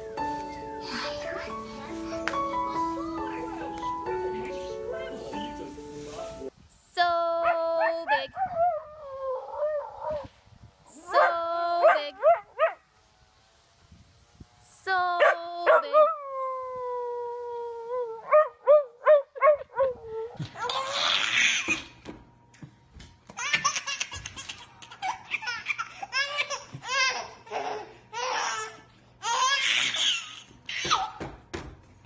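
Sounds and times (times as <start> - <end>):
baby crying and yelping: 19.8 - 21.8, 24.9 - 31.2
baby laughing: 23.4 - 31.2.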